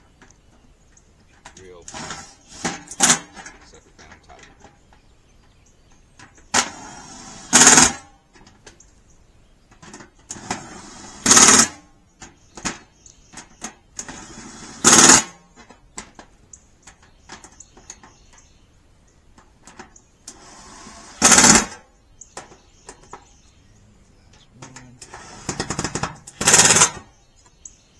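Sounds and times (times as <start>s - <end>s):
power drill driving screws: 1.8s - 3.4s, 6.6s - 8.0s, 10.3s - 11.8s, 14.0s - 15.3s, 20.3s - 21.8s, 25.0s - 27.1s.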